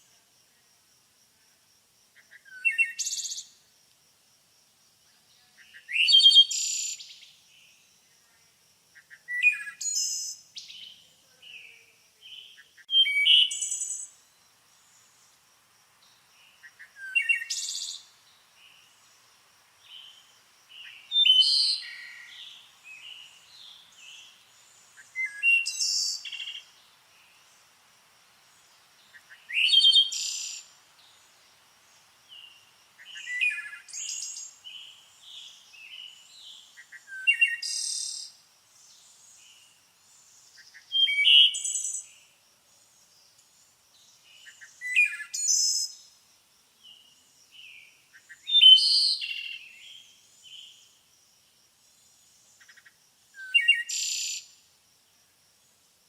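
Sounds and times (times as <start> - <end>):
songbird singing: 2.1 - 4.0, 4.6 - 55.8
soft bird chirps: 42.8 - 46.0.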